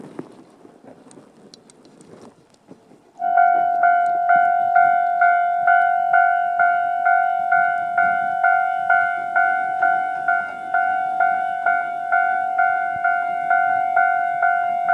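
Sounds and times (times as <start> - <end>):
level crossing warning bell: 3.2 - 14.9.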